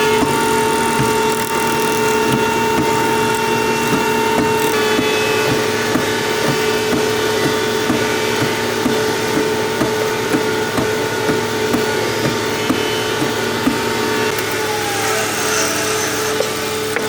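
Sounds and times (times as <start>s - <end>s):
electric motor running: 0.0s - 17.0s
faint regular ticking: 0.2s - 4.8s.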